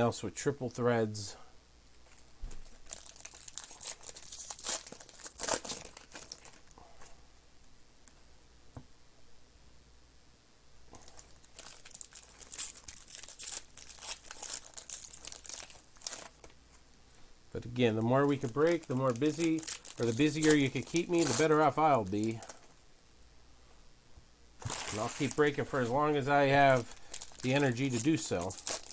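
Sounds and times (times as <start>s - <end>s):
wrappers torn and crinkled: 2.1s - 6.8s, 11.0s - 16.6s, 18.2s - 22.8s, 24.6s - 28.9s.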